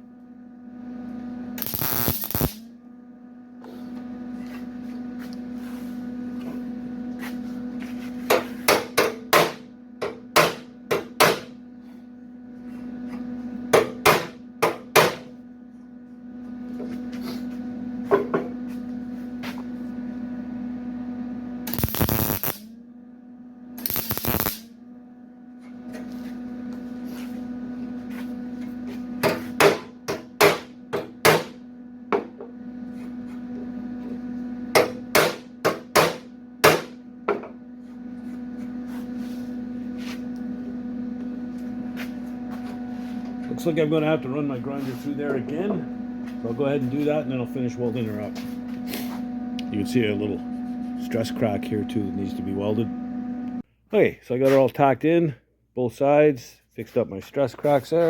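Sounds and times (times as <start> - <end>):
steady electrical hum: 0.0 - 58.0
tack welding bursts: 1.6 - 2.6, 21.7 - 22.7, 23.8 - 24.7
hammer striking sheet steel: 29.2 - 31.6, 34.8 - 37.0.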